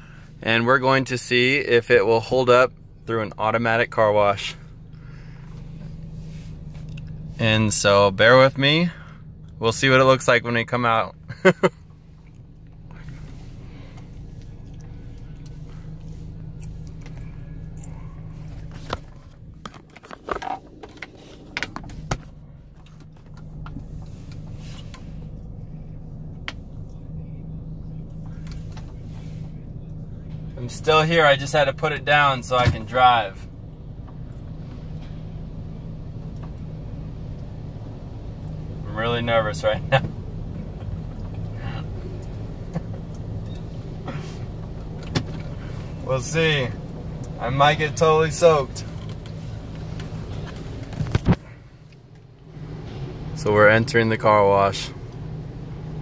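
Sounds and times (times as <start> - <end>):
car idling hum: 0.0 - 56.0
soft rustles: 5.4 - 7.4, 12.0 - 25.4, 48.8 - 52.1.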